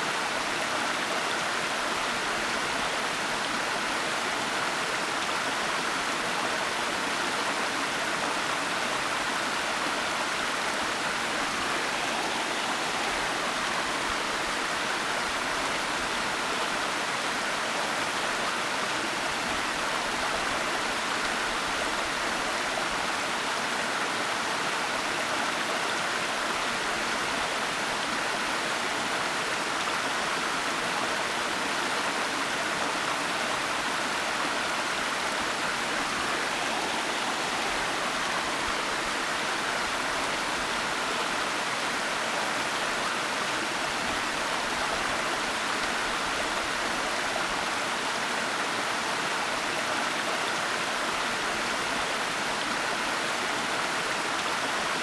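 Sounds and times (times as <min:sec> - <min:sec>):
waterfall rushing: 0:10.0 - 0:16.1, 0:32.9 - 0:48.1.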